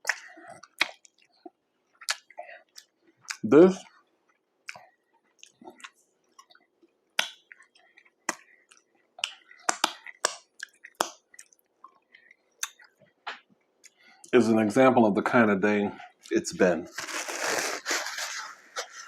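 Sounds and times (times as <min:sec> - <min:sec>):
person chewing wetly: 0:00.0 - 0:14.2.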